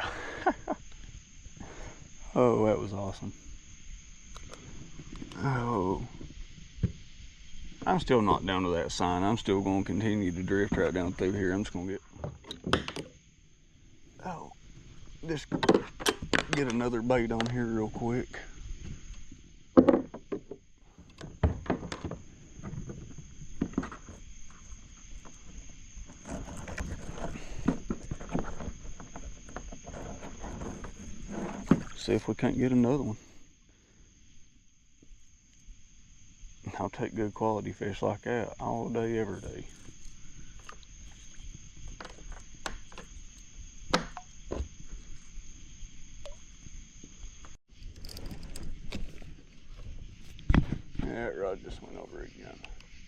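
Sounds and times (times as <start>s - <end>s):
crickets droning: 0.0s - 53.0s
fishing gear knocking and rustling: 47.8s - 51.0s.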